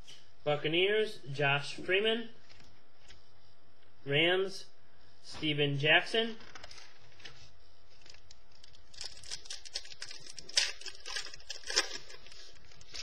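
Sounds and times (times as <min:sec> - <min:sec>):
trading cards rustling: 0:06.3 - 0:13.0.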